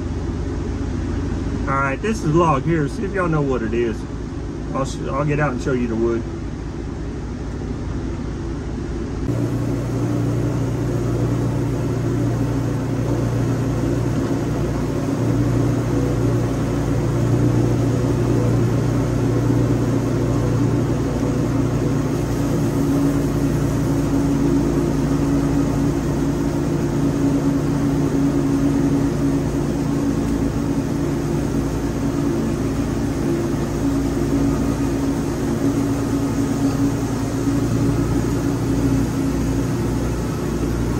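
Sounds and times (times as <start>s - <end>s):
band sawmill engine drone: 0.0s - 40.9s.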